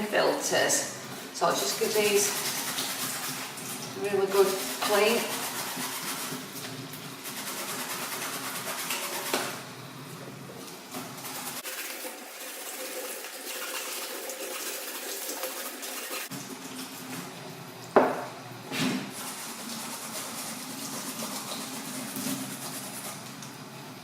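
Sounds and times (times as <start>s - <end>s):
tap water running into sink: 10.6s - 18.4s.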